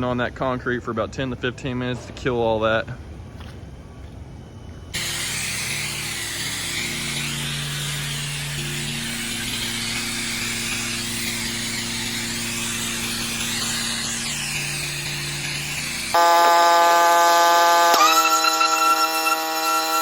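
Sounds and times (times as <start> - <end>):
pressure washer spraying: 5.0 - 20.0.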